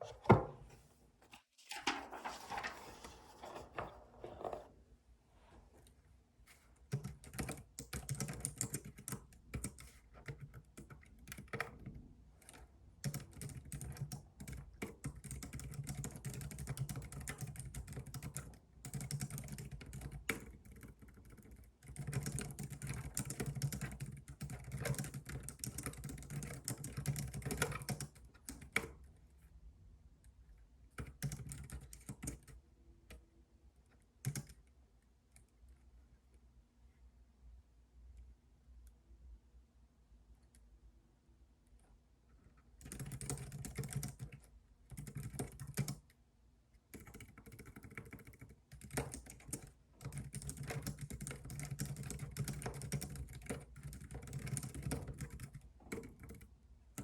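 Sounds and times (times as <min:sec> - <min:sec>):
keyboard typing: 0:06.9 - 0:29.0, 0:30.9 - 0:33.2, 0:34.2 - 0:34.6, 0:42.8 - 0:46.1, 0:46.9 - 0:57.0.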